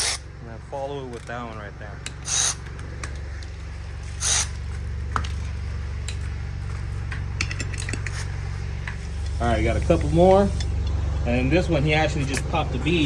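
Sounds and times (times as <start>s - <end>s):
impact wrench bursts: 0.0s - 0.4s, 2.0s - 6.3s
steady low hum: 0.0s - 13.0s.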